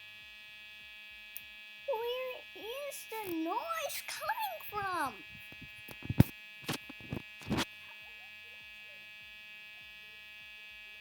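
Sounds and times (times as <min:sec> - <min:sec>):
electric buzz: 0:00.0 - 0:07.8.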